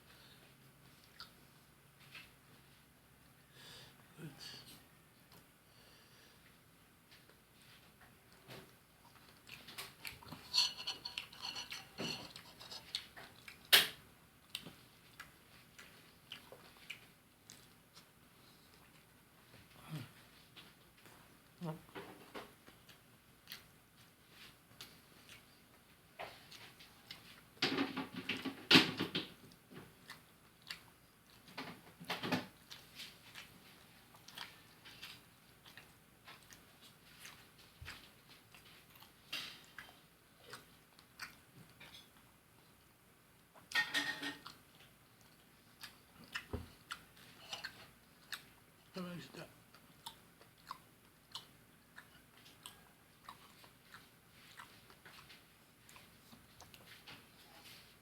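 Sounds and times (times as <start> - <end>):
person chewing fried fish: 0.9 - 1.4, 8.3 - 20.2, 22.6 - 27.6, 29.4 - 31.7, 32.5 - 49.0, 49.6 - 58.0.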